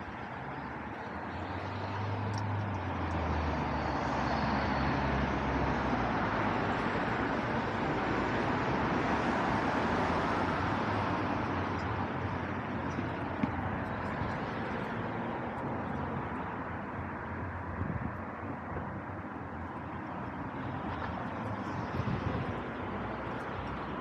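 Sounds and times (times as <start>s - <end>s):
low engine hum: 0.0s - 24.0s
passing vehicle: 0.0s - 24.0s.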